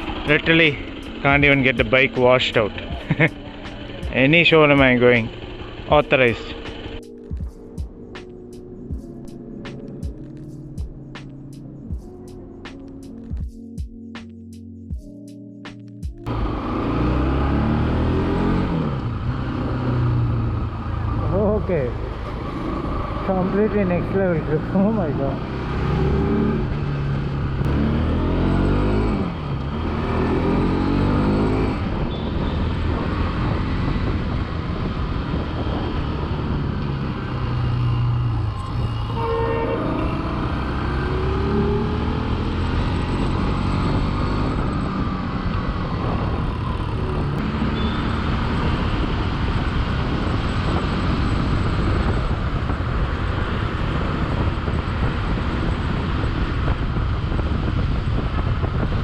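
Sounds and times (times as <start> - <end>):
motorcycle engine revving: 0.0 - 7.5, 16.2 - 59.0
wind and road noise: 0.0 - 59.0
horn toot: 38.5 - 42.2.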